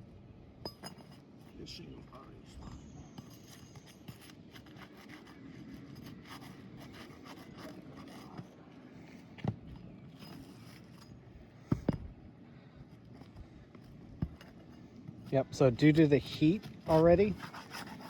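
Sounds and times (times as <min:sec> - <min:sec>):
roof shingles scraped and rustled: 0:02.8 - 0:11.3, 0:13.0 - 0:18.0.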